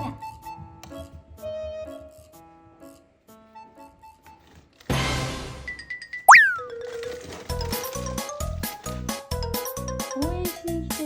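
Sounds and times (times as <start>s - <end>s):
upbeat playful music: 6.3s - 6.7s.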